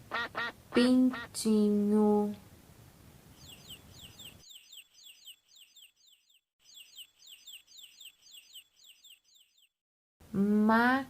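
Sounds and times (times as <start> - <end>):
baby chick peeping: 0.1 - 1.4, 3.4 - 9.7.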